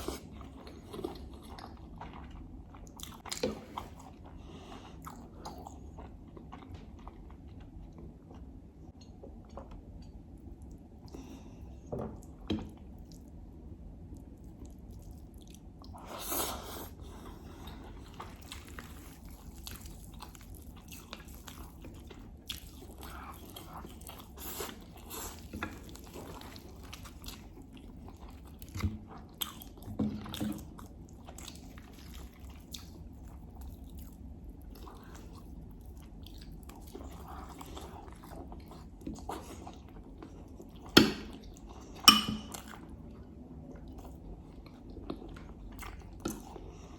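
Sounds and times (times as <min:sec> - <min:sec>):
person chewing food: 0:00.0 - 0:46.9.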